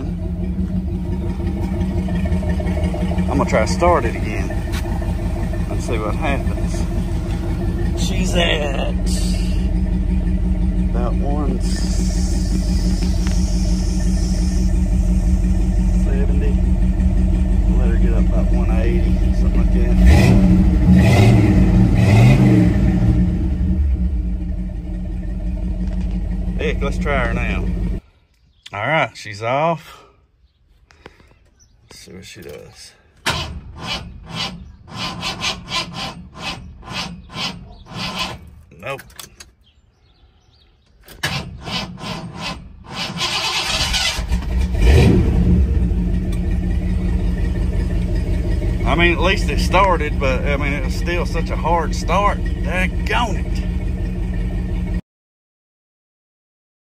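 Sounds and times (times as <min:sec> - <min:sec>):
pickup truck engine running: 0:00.0 - 0:28.0, 0:41.2 - 0:55.0
starter motor cranking: 0:33.2 - 0:39.4, 0:41.0 - 0:49.4.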